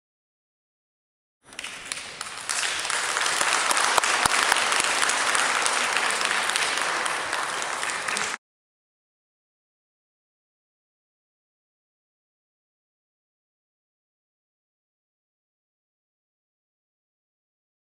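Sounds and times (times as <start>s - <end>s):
crowd applauding: 1.5s - 8.4s.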